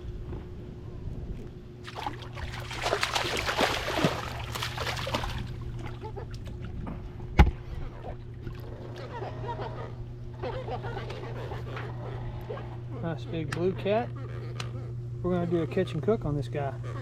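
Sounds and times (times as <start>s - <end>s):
low hum: 0.0s - 17.0s
water splashing beside kayak: 1.8s - 6.6s.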